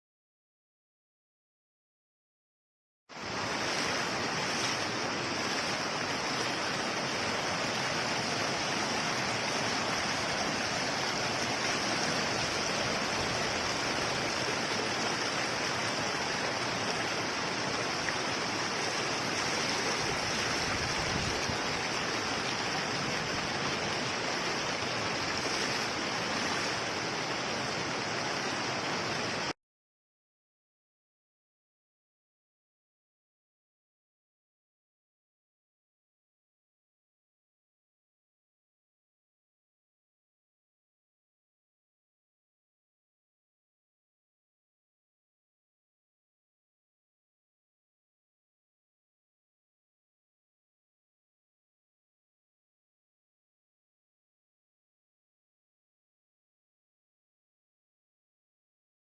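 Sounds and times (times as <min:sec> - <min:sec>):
floodwater rushing: 0:03.1 - 0:29.6.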